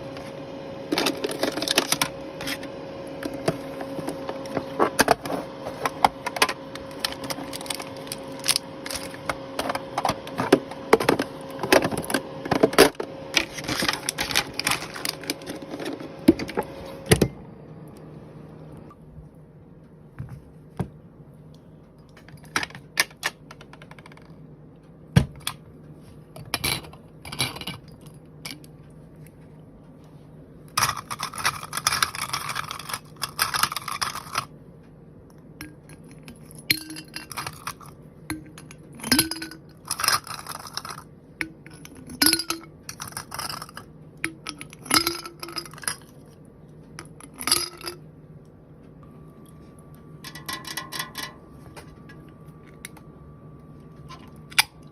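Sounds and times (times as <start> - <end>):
faint steady hum: 0.0 - 54.9
packaging rustle: 13.4 - 16.0.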